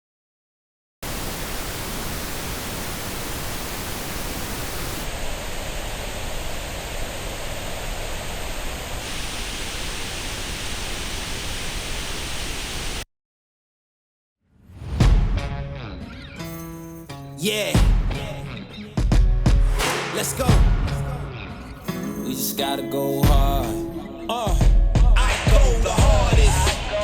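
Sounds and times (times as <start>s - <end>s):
pink noise hiss: 1.0s - 13.0s.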